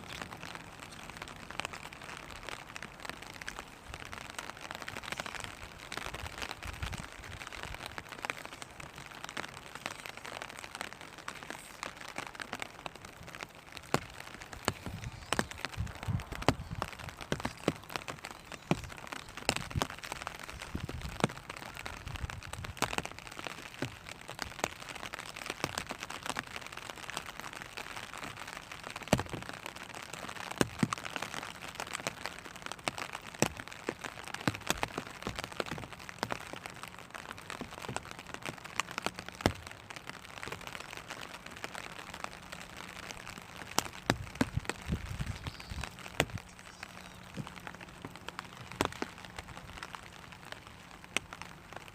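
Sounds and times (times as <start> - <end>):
rain on plastic umbrella: 0.0 - 51.9.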